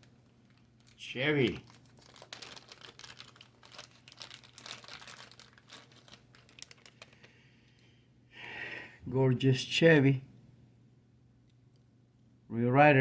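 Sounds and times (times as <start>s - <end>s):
packaging crinkling: 0.0s - 7.8s.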